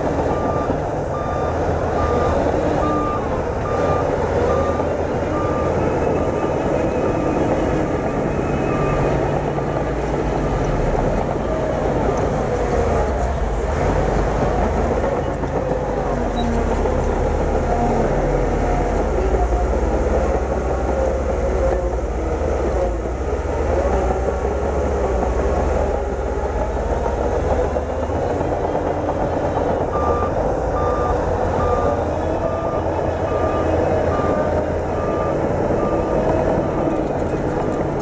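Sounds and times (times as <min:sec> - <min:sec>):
bulldozer diesel engine running: 0:00.0 - 0:38.0
reverse alarm beeping: 0:00.3 - 0:07.2, 0:30.0 - 0:36.3.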